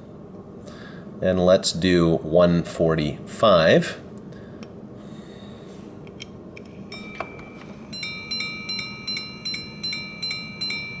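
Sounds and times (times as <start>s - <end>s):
ringing hour strike: 6.8s - 11.0s
ding-dong strikes on gongs: 6.9s - 11.0s.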